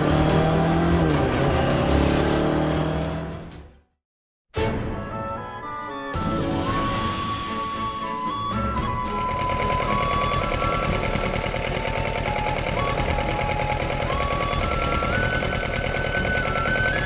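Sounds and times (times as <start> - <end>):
motorcycle engine running: 0.0 - 3.5, 8.8 - 17.0
background music melody: 4.6 - 17.0.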